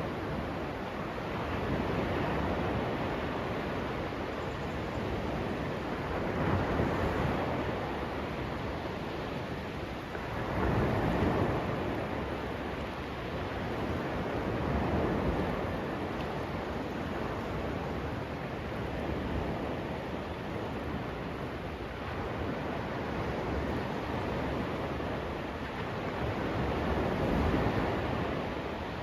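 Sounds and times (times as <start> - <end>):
waves washing onto sand: 0.0 - 29.0.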